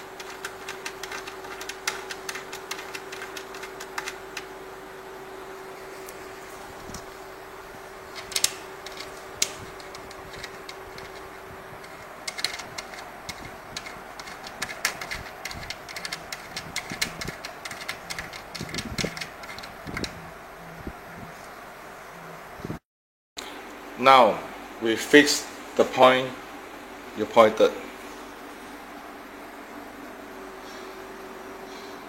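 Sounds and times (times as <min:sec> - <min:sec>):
steady hum: 0:00.0 - 0:22.8.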